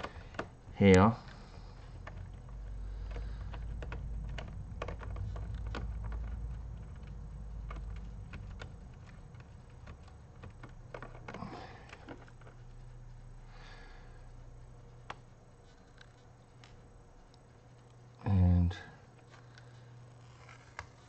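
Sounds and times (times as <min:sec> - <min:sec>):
hands tapping plastic laptop: 0:00.0 - 0:12.6.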